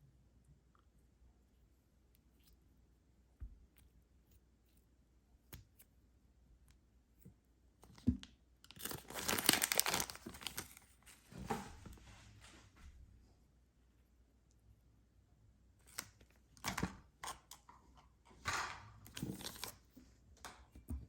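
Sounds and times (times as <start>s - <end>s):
candy wrapper tearing and crinkling: 8.7s - 10.8s.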